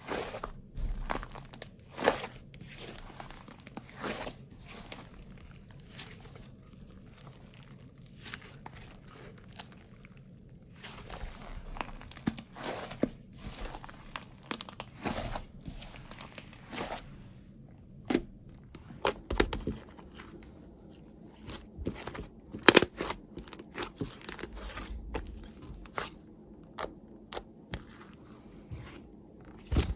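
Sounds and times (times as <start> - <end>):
slime crackling and popping: 18.7 - 20.5, 21.4 - 28.0.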